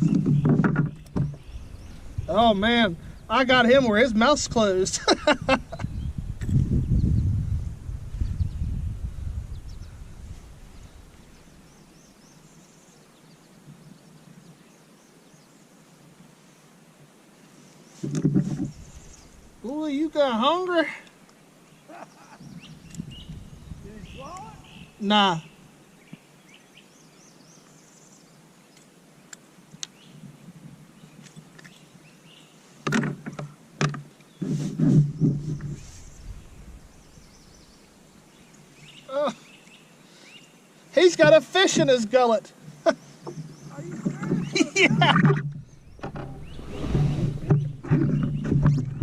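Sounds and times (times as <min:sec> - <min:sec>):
bird chirping: 0:00.0 - 0:04.2, 0:21.7 - 0:28.8, 0:35.1 - 0:40.8, 0:42.8 - 0:49.0
quiet river flowing: 0:00.0 - 0:06.6, 0:07.6 - 0:49.0
short loud thumps: 0:44.0 - 0:49.0
faint bird chirps: 0:45.4 - 0:49.0
low rumble: 0:45.5 - 0:49.0.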